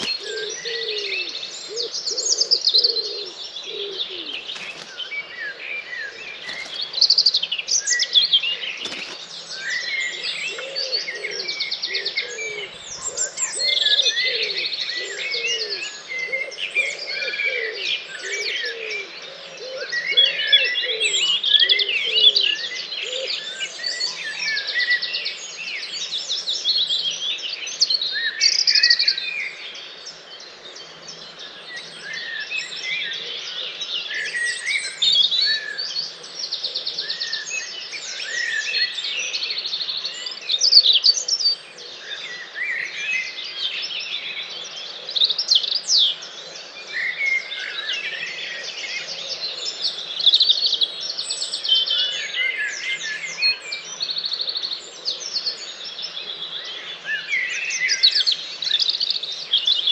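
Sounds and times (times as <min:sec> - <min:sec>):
pigeon cooing: 0:00.0 - 0:04.9, 0:10.5 - 0:23.4
songbirds singing: 0:00.0 - 0:59.9.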